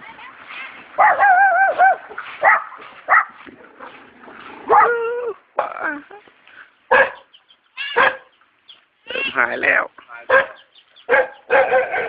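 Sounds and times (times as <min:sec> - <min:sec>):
dog barking: 0:01.0 - 0:03.4, 0:04.7 - 0:05.1, 0:06.9 - 0:07.3, 0:08.0 - 0:08.3, 0:10.3 - 0:12.0.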